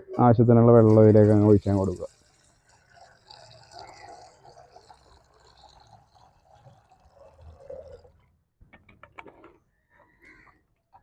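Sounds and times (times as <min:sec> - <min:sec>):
water trickling into pot: 0:00.7 - 0:08.3.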